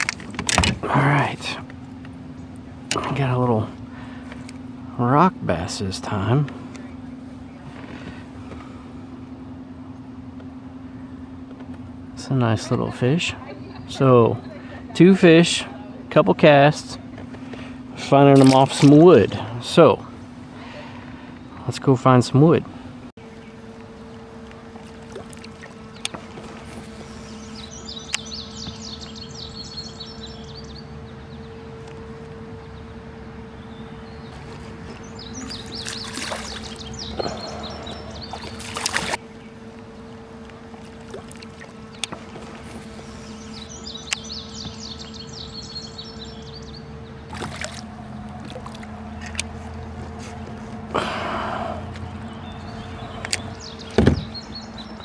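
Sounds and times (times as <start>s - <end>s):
water trickling off paddle: 0.0s - 4.8s, 17.1s - 21.5s, 23.2s - 55.0s
steady low hum: 0.0s - 55.0s
paddle strokes splashing water: 17.0s - 19.7s, 23.2s - 30.6s, 34.0s - 55.0s
light knocks: 53.2s - 54.5s.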